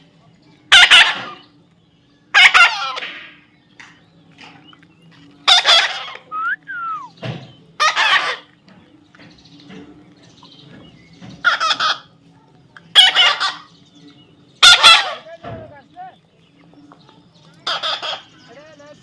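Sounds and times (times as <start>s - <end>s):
parrot screeching: 2.3s - 3.0s, 14.6s - 15.3s, 17.6s - 18.3s.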